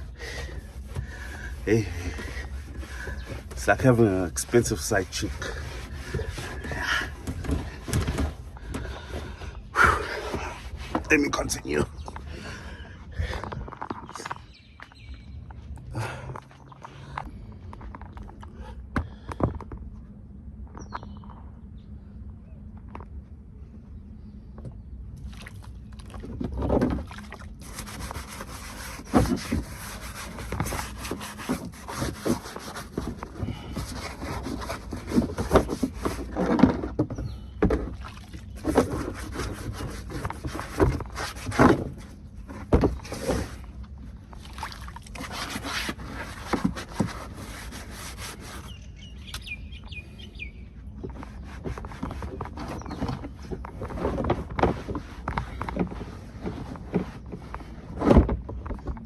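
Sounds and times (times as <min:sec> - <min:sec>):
scrubbing and rubbing strokes: 0:00.0 - 0:14.9, 0:26.2 - 0:37.0, 0:37.9 - 0:49.2, 0:50.9 - 0:58.1.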